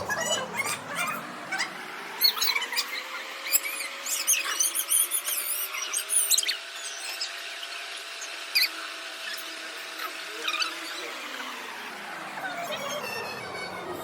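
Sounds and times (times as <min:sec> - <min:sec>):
high-pitched squeaks and chirps: 0:00.0 - 0:09.5.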